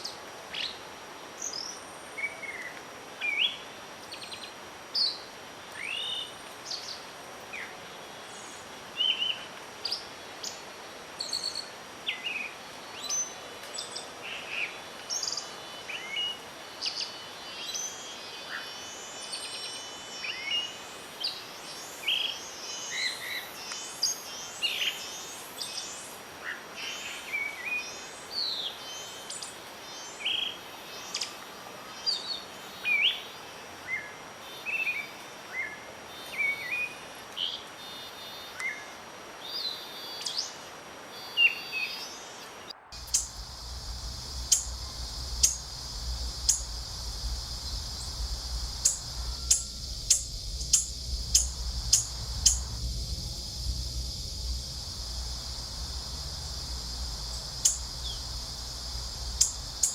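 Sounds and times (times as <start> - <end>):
wind: 0.0 - 59.9
birds chirping and singing: 43.0 - 59.9.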